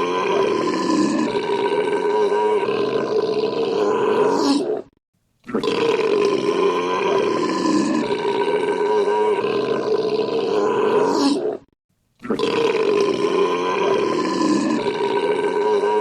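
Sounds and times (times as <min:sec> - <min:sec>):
man belching: 0:00.0 - 0:04.6, 0:05.5 - 0:11.3, 0:12.2 - 0:16.0.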